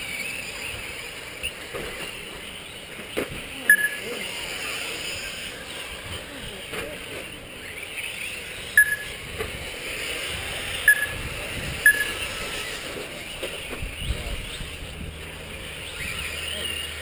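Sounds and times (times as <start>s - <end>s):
toy race trucks whining: 0.0s - 17.0s
short sharp high beeps: 3.7s - 4.0s, 8.8s - 9.1s, 10.9s - 11.2s, 11.8s - 12.2s.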